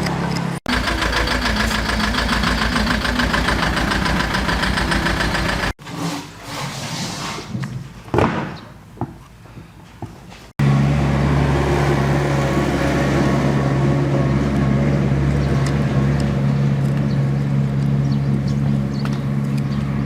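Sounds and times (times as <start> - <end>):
tractor engine running: 0.0 - 5.8, 10.6 - 20.0.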